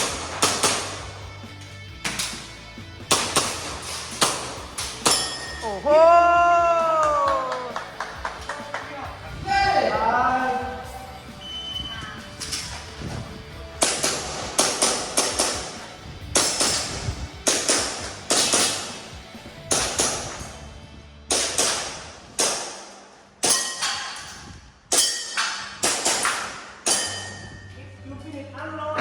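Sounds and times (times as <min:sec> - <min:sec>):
airsoft pistol shots: 0:00.0 - 0:01.2, 0:03.1 - 0:05.4, 0:13.8 - 0:19.1, 0:19.7 - 0:20.6, 0:21.3 - 0:24.3, 0:24.9 - 0:27.3.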